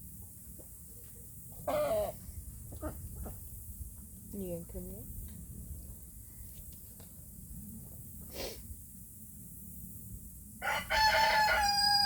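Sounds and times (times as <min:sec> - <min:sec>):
breathy puff of noise: 0:08.3 - 0:08.7
rooster crowing: 0:10.6 - 0:12.0.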